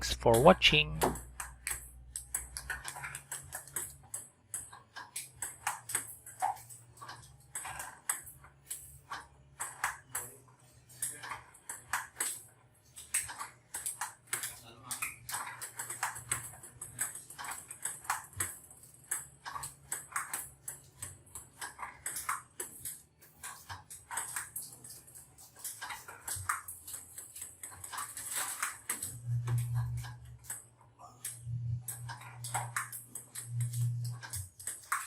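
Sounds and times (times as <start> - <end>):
table tennis balls clicking: 0.0 - 35.0
low steady hum: 29.0 - 34.6.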